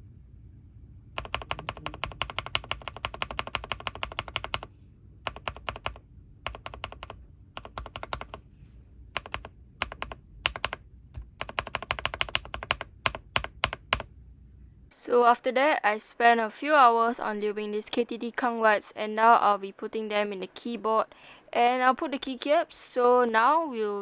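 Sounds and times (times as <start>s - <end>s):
plastic keyboard keys clicking: 1.2s - 4.7s, 5.3s - 8.4s, 9.2s - 14.1s.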